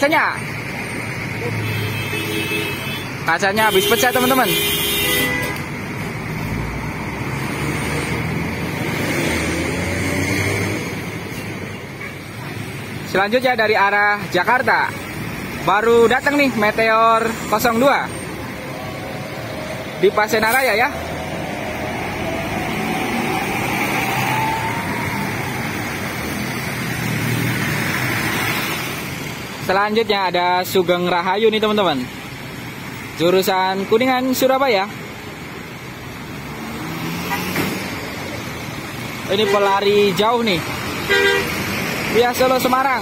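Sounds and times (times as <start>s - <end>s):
road traffic noise: 0.0s - 43.0s
bus diesel engine running: 14.5s - 28.0s.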